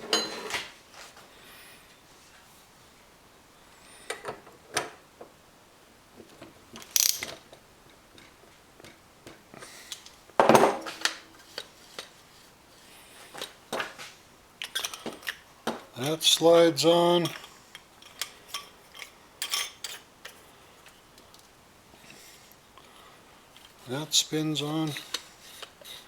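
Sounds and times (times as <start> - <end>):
tools and faucet parts clinking: 6.8 - 7.4, 14.6 - 15.4, 17.2 - 20.4.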